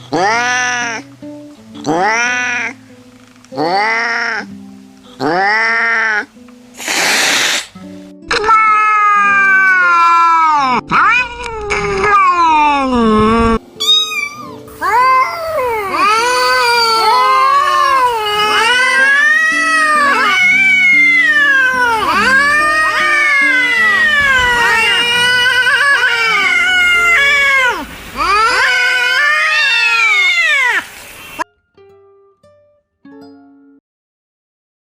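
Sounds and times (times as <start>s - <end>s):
cat yowling: 0.1s - 1.0s, 1.9s - 2.8s, 3.6s - 4.5s, 5.2s - 6.3s, 8.3s - 13.2s, 13.8s - 30.9s.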